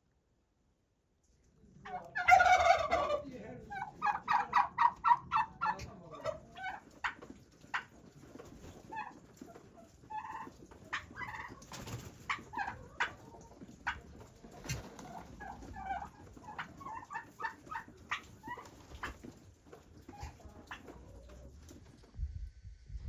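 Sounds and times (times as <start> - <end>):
fowl clucking: 1.8 - 21.6.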